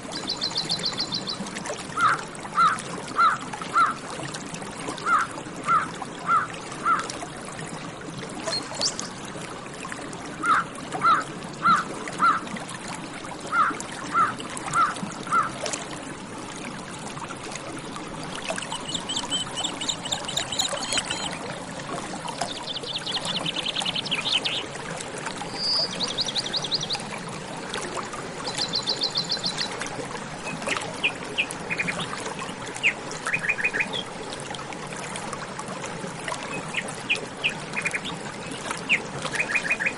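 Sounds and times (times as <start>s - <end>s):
water trickling and pouring: 0.0s - 39.9s
songbird trills: 0.2s - 1.4s, 18.5s - 21.4s, 22.4s - 24.7s, 25.5s - 27.1s, 28.4s - 29.8s, 38.9s - 39.9s.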